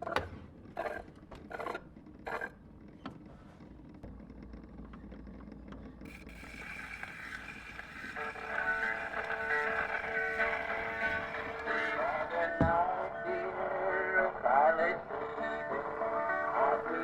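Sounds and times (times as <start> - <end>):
turntable rumble and needle hiss: 0.0 - 17.0
gramophone crank winding: 3.6 - 12.6
record playing: 6.1 - 17.0.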